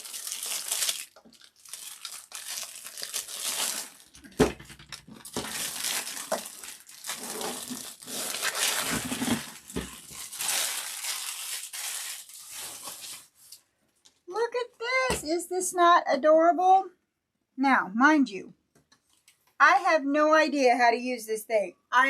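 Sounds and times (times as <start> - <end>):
packaging crinkling and rustling: 0.0 - 13.7.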